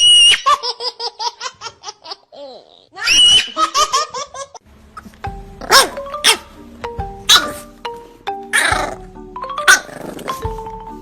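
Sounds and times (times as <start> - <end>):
high-pitched human laughter: 3.0 - 4.6.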